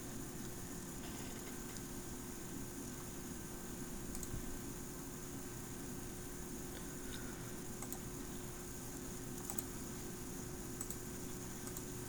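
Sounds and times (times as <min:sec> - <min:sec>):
electrical hum and hiss: 0:00.0 - 0:12.0
computer keyboard clicks: 0:07.8 - 0:08.0, 0:09.4 - 0:09.7, 0:10.8 - 0:11.0, 0:11.6 - 0:11.9.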